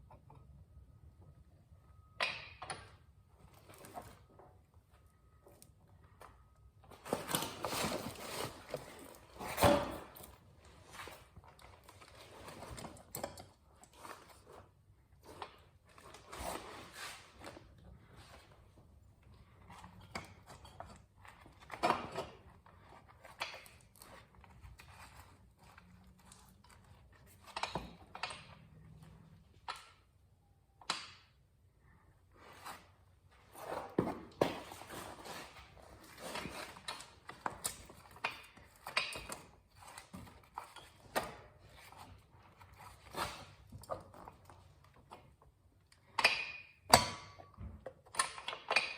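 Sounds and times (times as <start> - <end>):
hand tools and metal parts knocking: 36.2 - 41.4, 46.0 - 48.9.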